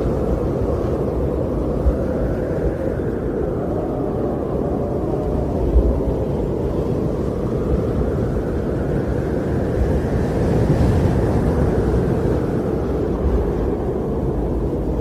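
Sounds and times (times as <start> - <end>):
wind blowing: 0.0 - 15.0.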